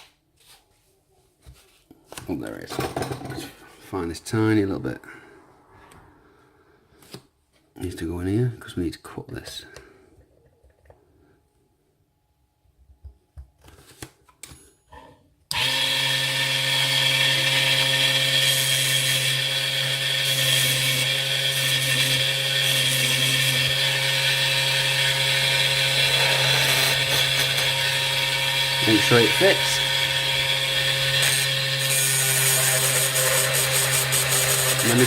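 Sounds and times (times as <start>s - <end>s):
electric power tool humming: 15.5s - 35.0s.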